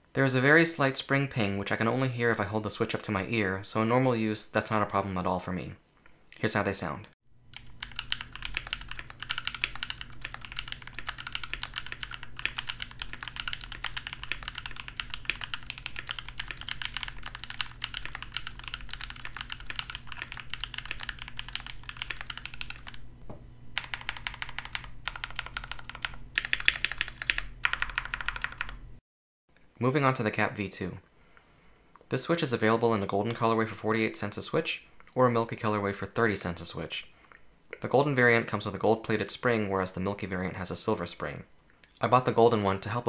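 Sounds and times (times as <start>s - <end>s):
mechanical keyboard typing: 7.5s - 23.0s, 23.8s - 28.8s.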